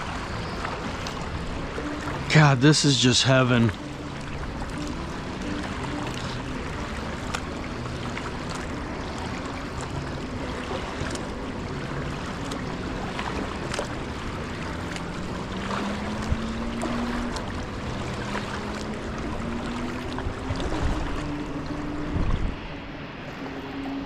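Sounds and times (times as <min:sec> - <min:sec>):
paddle splashing and dripping: 0:00.0 - 0:24.0.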